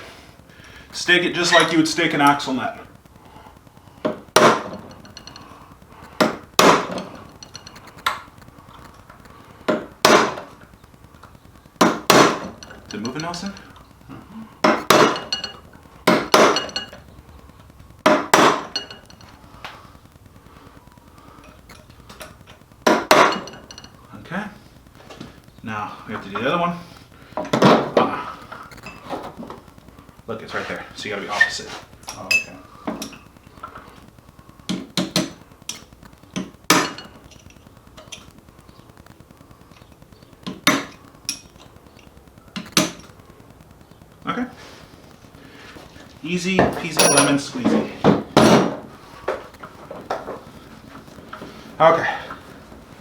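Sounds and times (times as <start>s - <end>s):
hammer striking metal punch: 4.4s - 4.8s, 14.7s - 15.4s, 16.1s - 16.8s.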